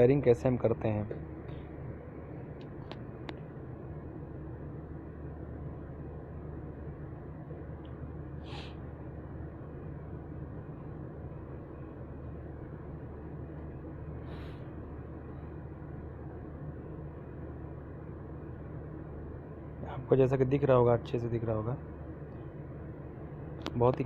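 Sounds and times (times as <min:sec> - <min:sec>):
fan motor humming: 0:00.0 - 0:24.0
brief hisses: 0:08.4 - 0:08.8.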